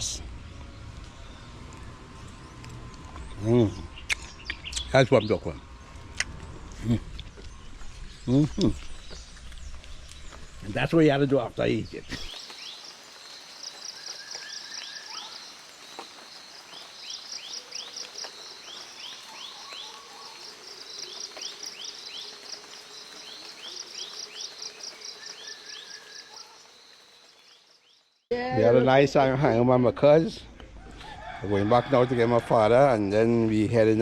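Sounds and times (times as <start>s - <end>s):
insects chirping: 0.0s - 29.6s
falling whistle-like calls: 13.8s - 15.7s.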